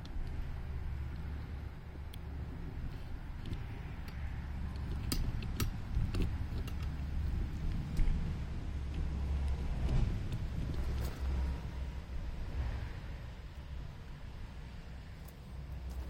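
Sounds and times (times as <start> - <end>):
steady low rumble: 0.0 - 16.0
hand tools clicking on metal: 3.4 - 8.1.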